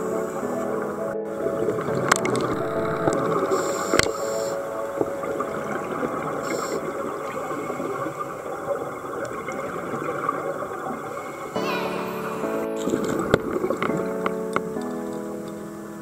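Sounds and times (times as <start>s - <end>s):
underwater hiss: 2.0s - 8.6s.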